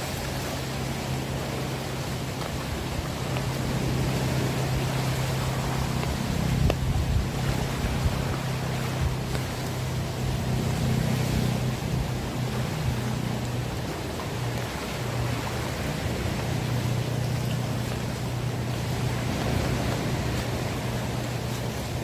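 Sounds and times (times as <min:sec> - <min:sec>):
heavy rain hissing: 0:00.0 - 0:22.0
steady low rumble: 0:00.0 - 0:22.0.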